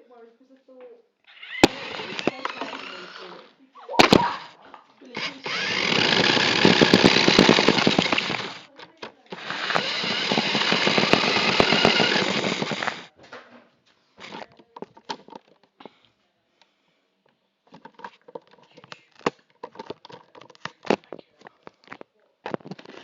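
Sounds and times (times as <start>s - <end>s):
toy car clattering rattle: 1.3s - 3.4s, 5.1s - 13.1s, 14.2s - 15.7s, 17.7s - 21.6s
toy car knocks and clicks: 1.4s - 3.4s, 5.2s - 13.1s, 14.2s - 15.8s, 17.7s - 23.0s.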